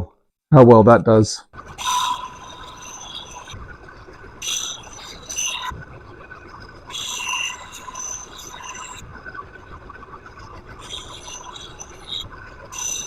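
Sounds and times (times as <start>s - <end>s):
axe grinding on belt sander: 4.4s - 5.7s, 6.9s - 9.0s, 10.7s - 13.0s.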